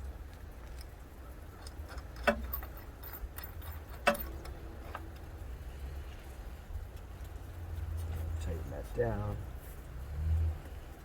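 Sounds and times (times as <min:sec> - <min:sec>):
clicks of handling metal hardware: 0:01.6 - 0:05.2.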